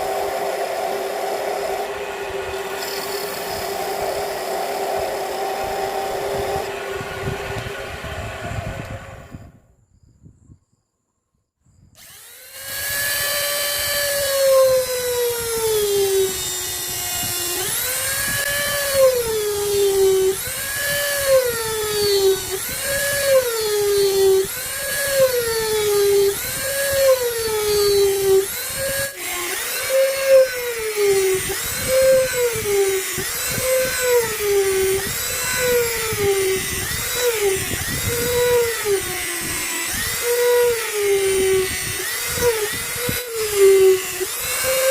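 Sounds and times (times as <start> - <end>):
wood lathe whine: 0.0 - 9.5, 12.0 - 44.9.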